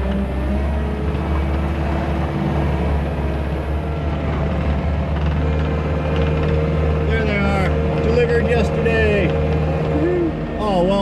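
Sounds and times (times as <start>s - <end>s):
track loader diesel engine: 0.0s - 11.0s.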